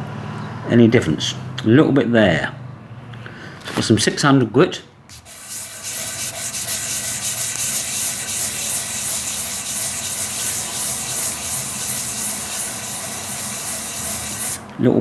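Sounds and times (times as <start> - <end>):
sandpaper sanding by hand: 5.1 - 14.6.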